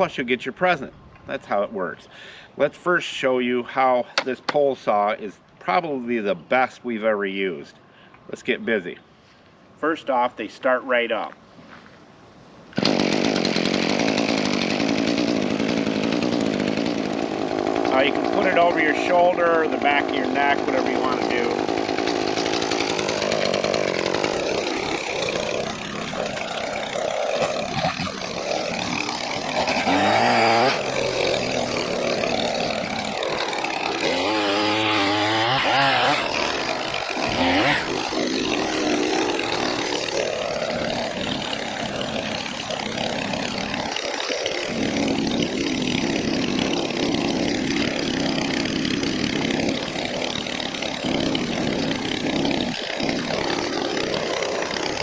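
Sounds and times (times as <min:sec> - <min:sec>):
pole saw engine revving: 0:12.8 - 0:55.0.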